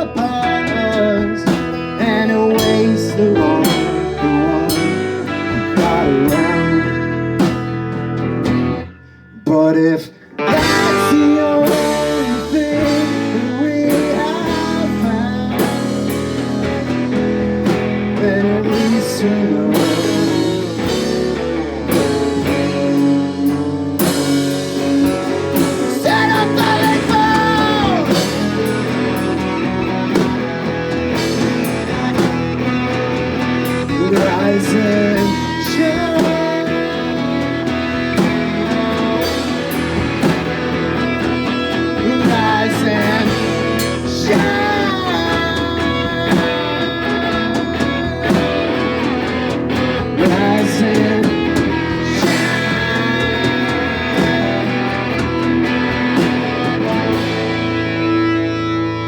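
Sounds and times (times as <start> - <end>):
person singing: 0.0 - 7.7, 8.9 - 59.0
rock band playing live: 0.0 - 59.0.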